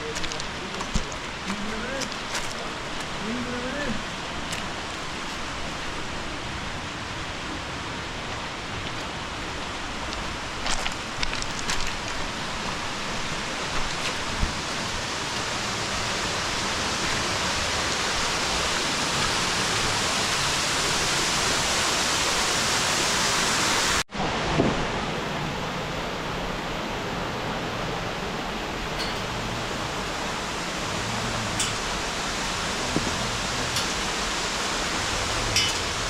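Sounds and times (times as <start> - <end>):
falling water rushing: 0.0 - 36.0.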